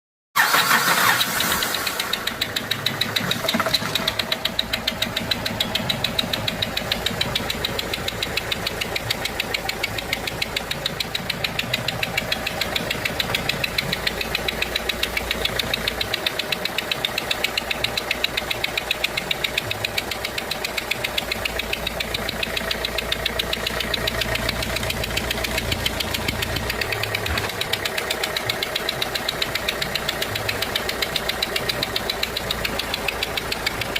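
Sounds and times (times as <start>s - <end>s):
diesel engine ticking knock: 1.0s - 33.9s.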